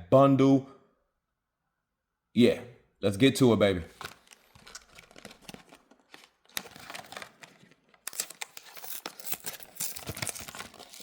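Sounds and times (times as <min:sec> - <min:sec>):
plastic and cardboard crinkling: 0:03.9 - 0:11.0.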